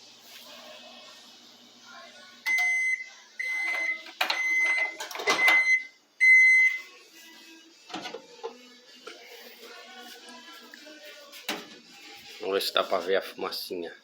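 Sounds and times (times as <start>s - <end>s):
microwave oven beeps: 2.4s - 6.9s
knocking and handling noise: 7.9s - 8.6s, 11.4s - 11.8s.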